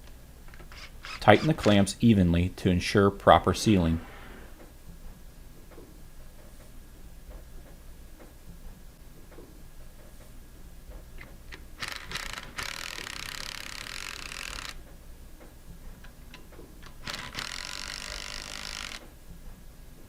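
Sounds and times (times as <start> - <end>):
ratchet wrench clicking: 11.5 - 14.8, 16.3 - 19.1.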